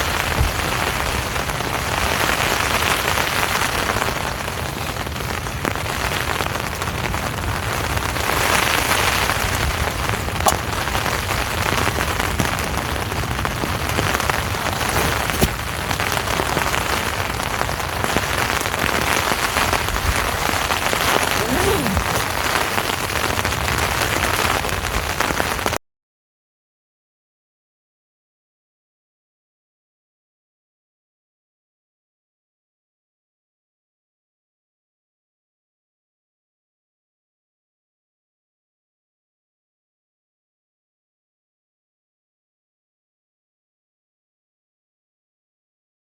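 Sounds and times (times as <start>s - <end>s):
heavy rain on a tent: 0.0s - 25.8s.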